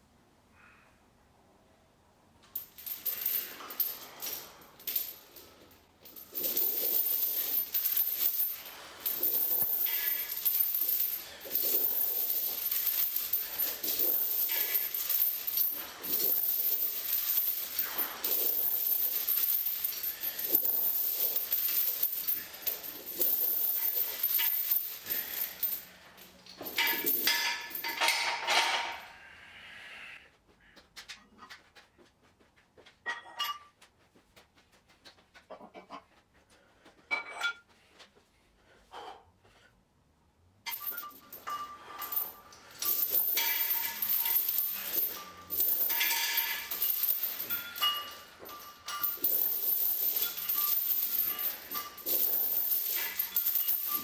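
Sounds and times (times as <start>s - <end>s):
metal gym equipment jingling: 2.6s - 29.2s, 33.1s - 33.8s, 40.7s - 54.0s
metal gym equipment clanking: 26.4s - 29.1s.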